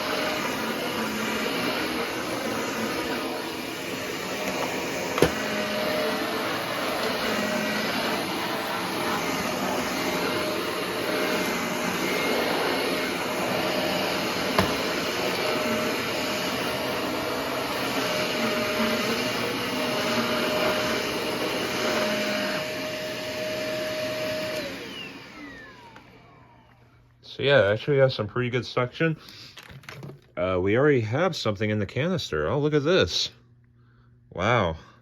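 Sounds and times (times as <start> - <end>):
vacuum cleaner motor whine: 0.0 - 27.0.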